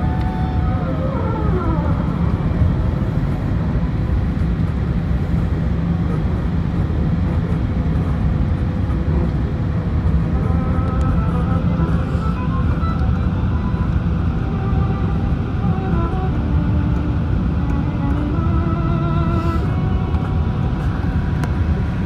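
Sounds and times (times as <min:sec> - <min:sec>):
jet engine whine gliding down: 0:00.0 - 0:22.0
jet engines rumbling: 0:00.0 - 0:22.0.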